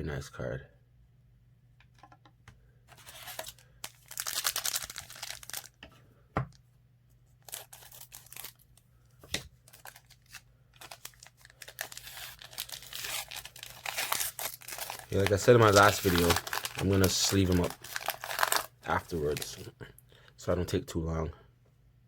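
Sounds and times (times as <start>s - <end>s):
wrapper crinkling and tearing: 3.0s - 5.8s, 7.4s - 8.7s, 9.7s - 19.6s.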